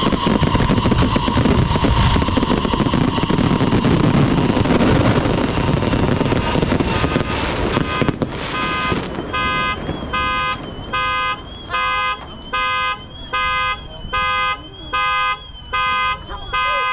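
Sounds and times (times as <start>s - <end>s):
fireworks crackle: 0.0s - 16.9s
warbling alarm tone: 0.0s - 16.9s
vehicle alarm beeping: 7.0s - 16.9s.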